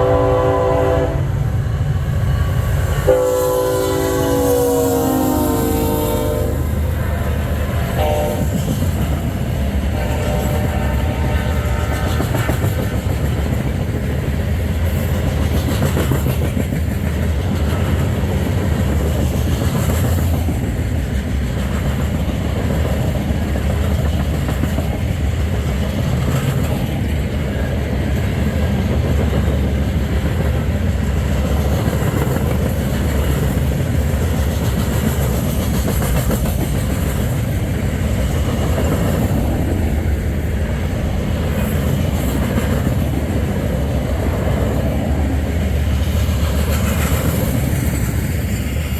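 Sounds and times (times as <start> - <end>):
freight train rumbling: 0.0 - 48.9.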